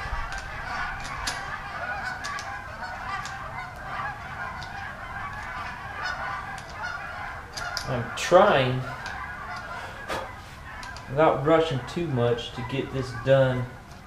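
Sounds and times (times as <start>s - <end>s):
geese honking: 0.0s - 14.0s.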